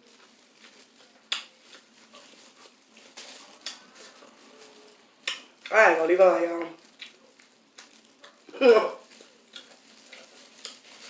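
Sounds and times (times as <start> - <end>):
seafood being chewed: 6.8 - 11.0.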